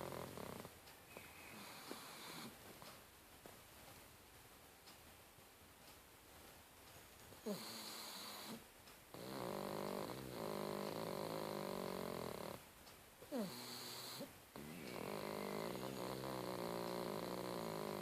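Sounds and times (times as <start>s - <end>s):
dog snoring: 0.0s - 0.7s, 1.5s - 2.6s, 7.4s - 12.6s, 13.3s - 18.0s.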